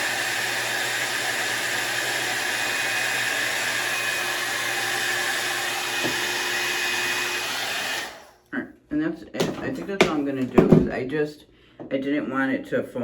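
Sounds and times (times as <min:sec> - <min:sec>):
hair dryer blowing: 0:00.0 - 0:08.4.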